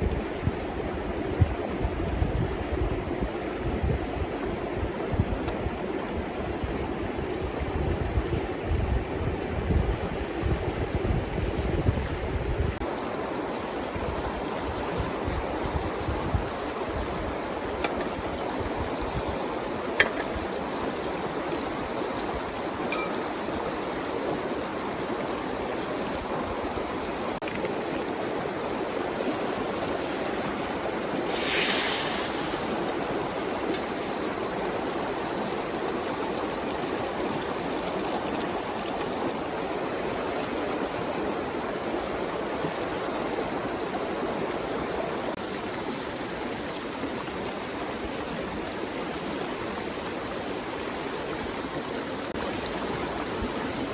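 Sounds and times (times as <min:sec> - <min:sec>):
wind buffet on microphone: 0:00.0 - 0:12.9, 0:13.6 - 0:23.6
river water flowing: 0:12.8 - 0:53.9
brief hiss: 0:31.3 - 0:33.1.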